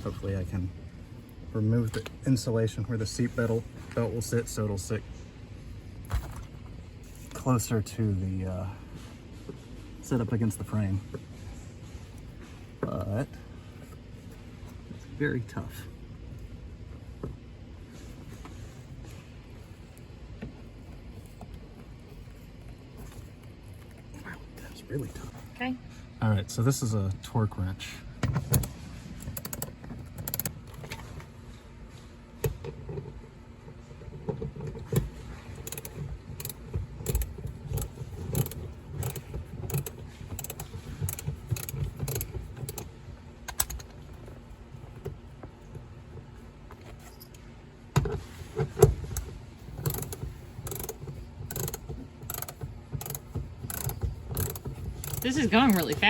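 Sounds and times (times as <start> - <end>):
ratcheting torque wrench clicking: 28.6 - 30.5, 35.6 - 42.9, 49.0 - 56.0.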